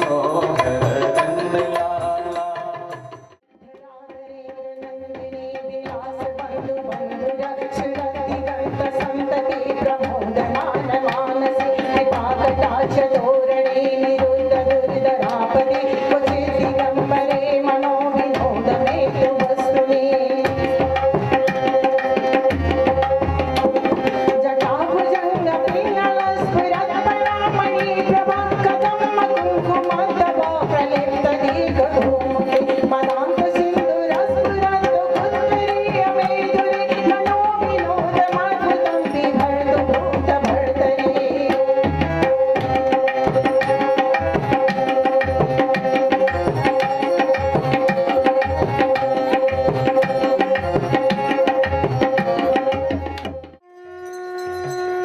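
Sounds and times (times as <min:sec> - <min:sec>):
hand drum rhythm: 0:00.0 - 0:03.3, 0:20.0 - 0:53.5
devotional instrumental melody: 0:00.0 - 0:03.4.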